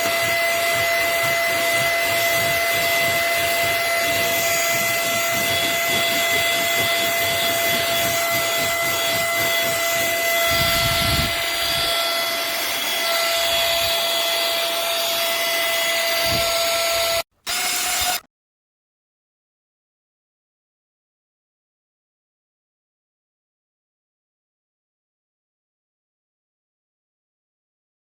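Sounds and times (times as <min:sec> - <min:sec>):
handheld vacuum cleaner running: 0:00.0 - 0:18.3.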